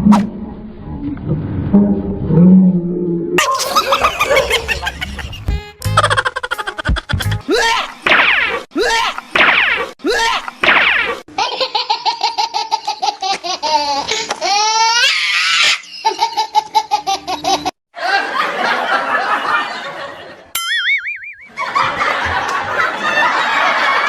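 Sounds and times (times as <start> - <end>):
warbling comedy tone: 3.4 - 6.7, 20.6 - 21.8
crowd laughing: 3.4 - 7.5, 16.0 - 20.5, 21.5 - 24.0
rhythmic pulsing laugh: 3.4 - 7.9, 16.0 - 20.3, 21.5 - 24.0.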